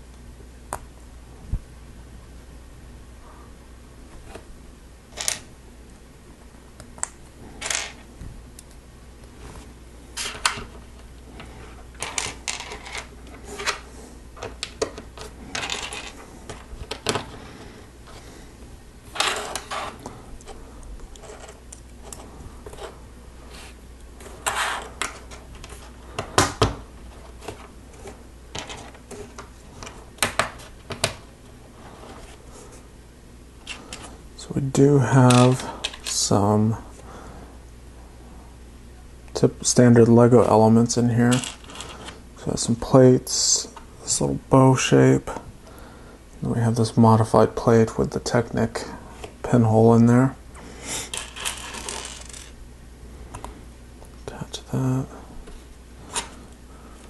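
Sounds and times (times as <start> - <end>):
plastic pieces clattering: 51.1 - 52.5.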